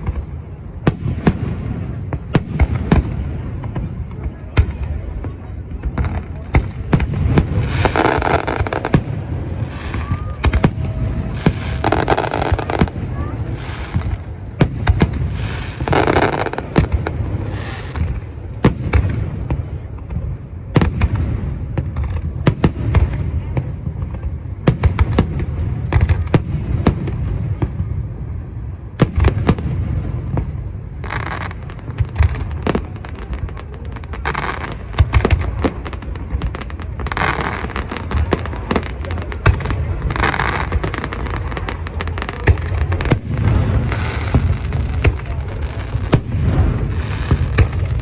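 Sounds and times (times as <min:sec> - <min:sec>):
fireworks bursting: 0:00.0 - 0:48.0
fireworks crackling: 0:00.0 - 0:48.0.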